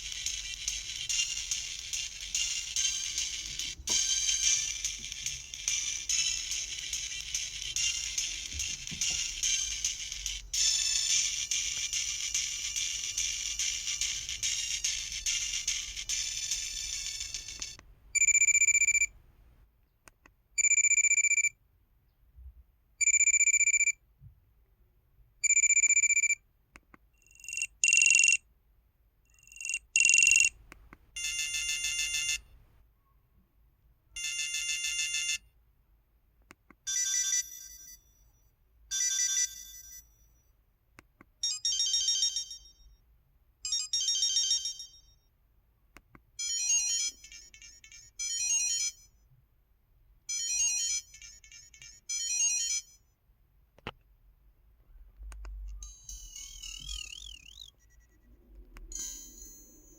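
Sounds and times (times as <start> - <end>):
sharp electronic beep: 27.4 - 28.4, 29.6 - 30.5, 55.8 - 58.3
buzzy electronic rings: 55.8 - 59.9.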